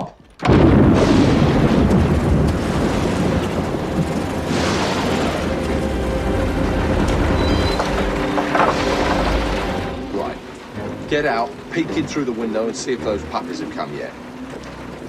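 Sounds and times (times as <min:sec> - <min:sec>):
thunderclap with rolling rumble: 0:00.4 - 0:15.0.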